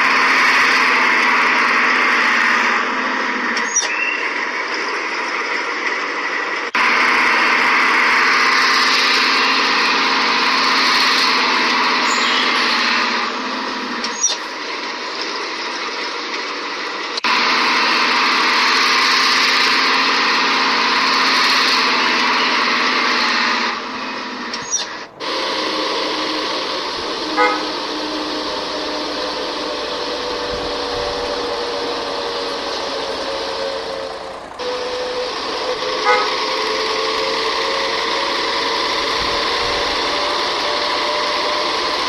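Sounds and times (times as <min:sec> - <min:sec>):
toy bus engine-like noise: 0:00.0 - 0:42.0
horn tones from small speaker: 0:24.6 - 0:32.6, 0:34.6 - 0:37.4.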